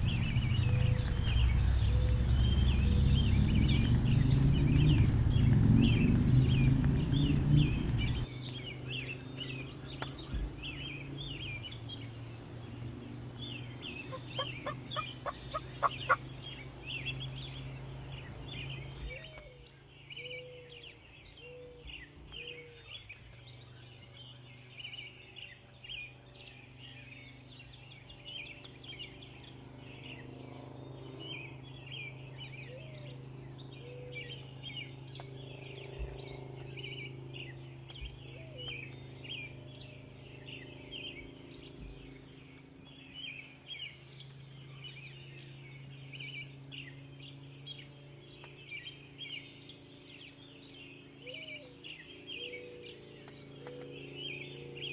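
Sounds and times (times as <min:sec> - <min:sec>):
low steady hum: 0:00.0 - 0:54.9
songbirds chirping: 0:00.0 - 0:54.9
turkey gobbling: 0:14.1 - 0:16.2.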